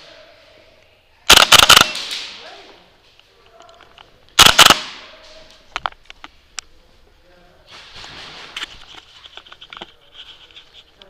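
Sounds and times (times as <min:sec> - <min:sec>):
airsoft gun rapid shots: 0:01.3 - 0:02.3, 0:04.4 - 0:05.0.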